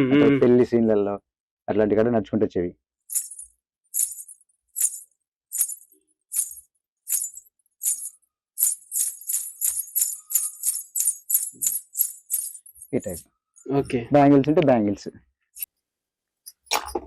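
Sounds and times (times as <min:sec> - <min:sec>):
anklet bells jingling: 0:03.1 - 0:13.7.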